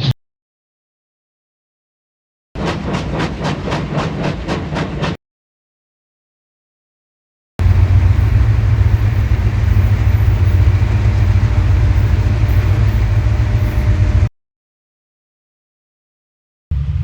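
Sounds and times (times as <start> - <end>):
train rumbling: 2.6 - 5.2, 7.6 - 14.3, 16.7 - 17.0.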